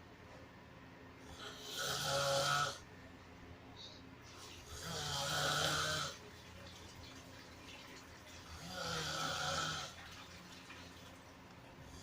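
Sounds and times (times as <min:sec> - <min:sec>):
person snoring loudly: 0:01.3 - 0:02.8, 0:04.7 - 0:06.2, 0:08.6 - 0:10.0.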